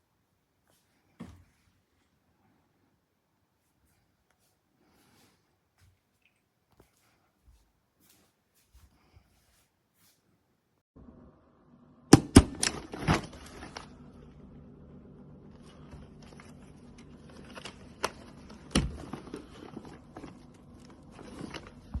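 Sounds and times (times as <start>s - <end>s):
low steady hum: 11.0s - 22.0s.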